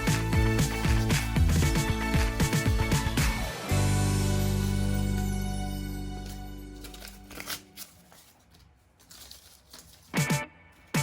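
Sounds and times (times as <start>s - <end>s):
background music with beat: 0.0s - 6.7s
guitar: 0.0s - 7.3s, 10.1s - 11.0s.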